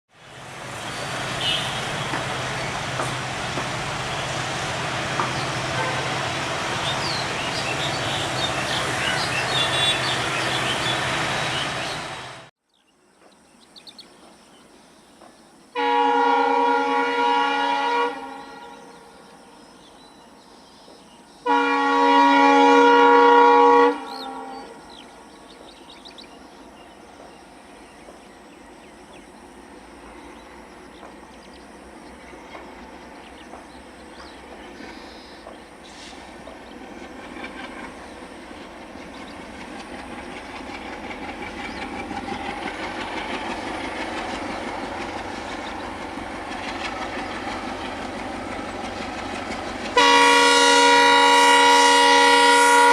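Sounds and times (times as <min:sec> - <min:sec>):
train engine and wheel noise: 0:00.1 - 0:52.9
locomotive horn blast: 0:01.3 - 0:02.5, 0:03.9 - 0:12.5, 0:15.8 - 0:19.1, 0:21.4 - 0:24.9, 0:50.0 - 0:52.9.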